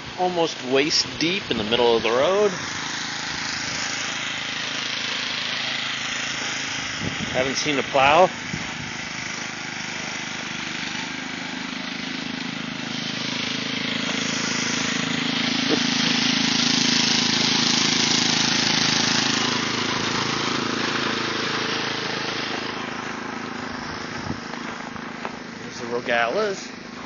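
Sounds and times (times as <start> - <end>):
rushing hiss: 0.0 - 27.0
snowblower engine running: 0.0 - 27.0.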